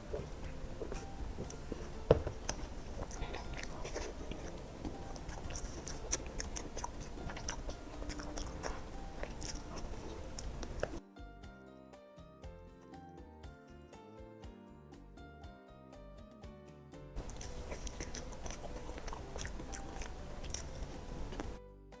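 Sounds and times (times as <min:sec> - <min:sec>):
person chewing food: 0:00.0 - 0:11.0, 0:17.2 - 0:21.6
music: 0:00.0 - 0:22.0.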